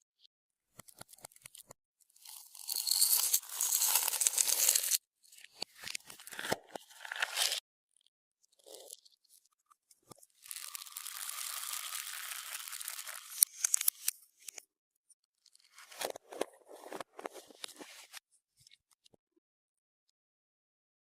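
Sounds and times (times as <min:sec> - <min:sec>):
slime crackling and popping: 0:10.4 - 0:13.8.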